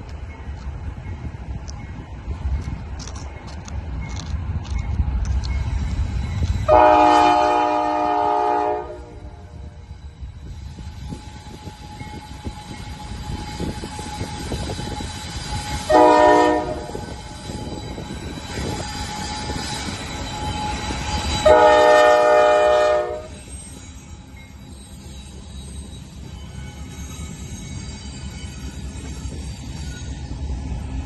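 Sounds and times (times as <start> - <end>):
train rumbling and clattering: 0.0 - 31.0
locomotive air horn blasts: 6.7 - 9.8, 15.9 - 17.1, 21.4 - 23.4.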